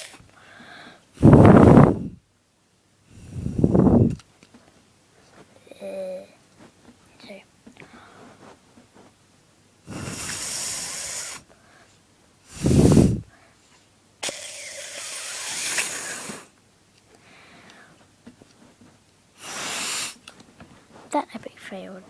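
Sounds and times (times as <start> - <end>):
breathy hisses through a straw: 3.1 - 4.1, 9.9 - 11.8, 12.5 - 13.4, 14.2 - 16.6, 19.4 - 20.3
loud puff of breath: 9.8 - 11.9, 12.5 - 13.5, 14.2 - 16.5, 19.4 - 20.2.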